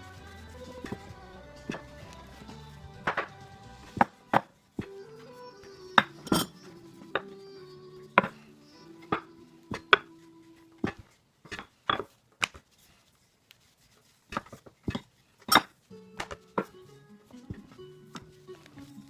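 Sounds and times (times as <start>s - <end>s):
soft background music: 0.0s - 10.9s, 15.8s - 19.0s.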